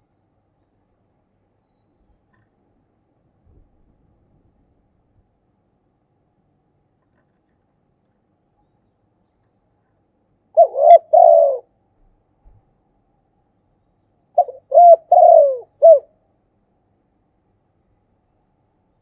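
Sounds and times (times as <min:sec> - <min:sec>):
dove cooing: 0:10.6 - 0:11.7, 0:14.4 - 0:16.1.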